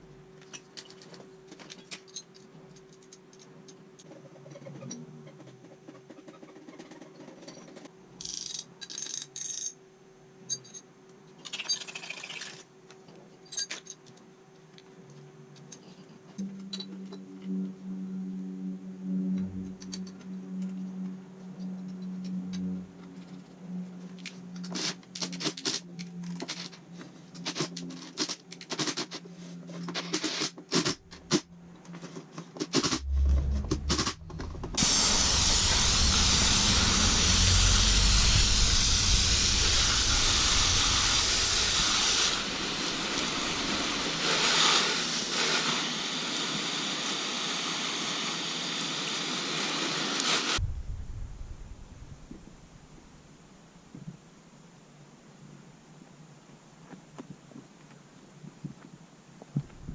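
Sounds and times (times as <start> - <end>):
low hum: 16.4 - 24.6, 32.8 - 44.2, 50.6 - 54.0
low thumping: 33.0 - 41.8, 50.6 - 53.5
spray hiss: 34.8 - 50.6.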